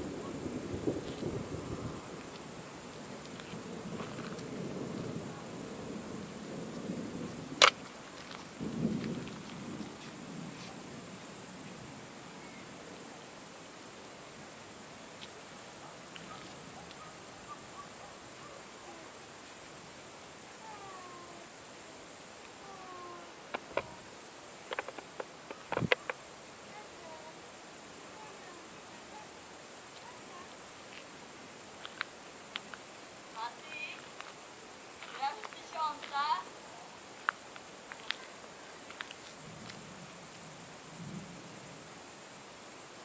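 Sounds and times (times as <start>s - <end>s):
crickets chirring: 0.0s - 43.0s.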